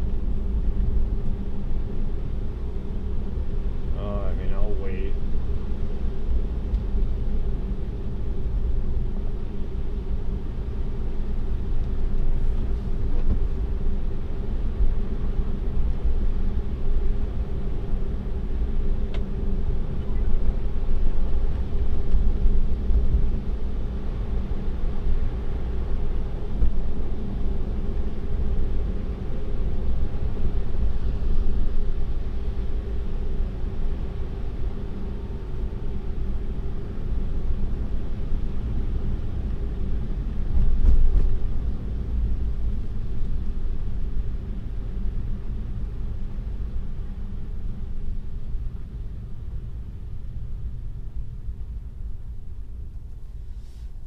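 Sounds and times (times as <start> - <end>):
road and tyre noise in car: 0.0 - 54.0.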